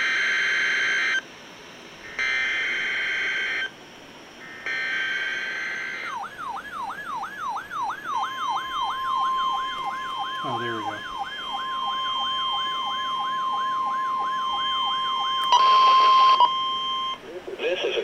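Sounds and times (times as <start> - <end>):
siren-like alarm sweeping: 2.1 - 3.7, 4.4 - 17.2
buzzy digital data bursts: 4.4 - 6.2, 8.1 - 18.0
steady single tone: 9.1 - 17.2.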